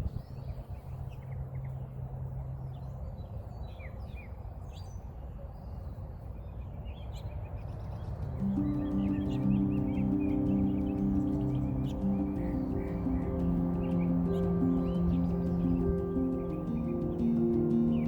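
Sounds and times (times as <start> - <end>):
small birds chirping: 0.0 - 18.0
background music sustained chord: 8.0 - 18.0.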